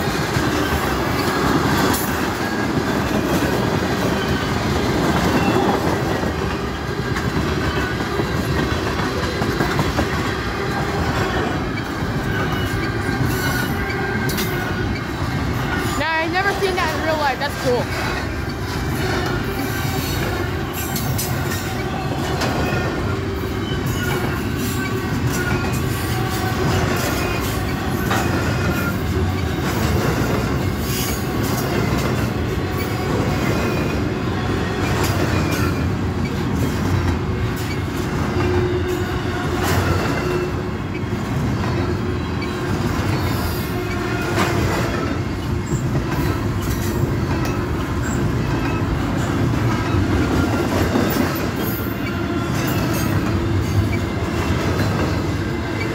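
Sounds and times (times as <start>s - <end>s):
freight train cars rumbling: 0.0s - 55.9s.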